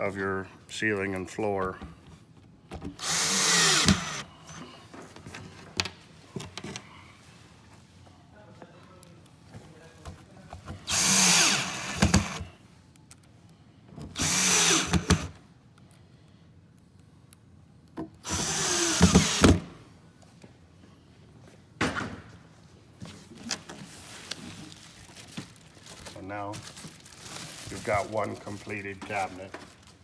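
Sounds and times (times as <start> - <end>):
power drill driving screws: 2.9 - 4.6, 10.9 - 12.5, 14.1 - 15.4, 18.2 - 19.7.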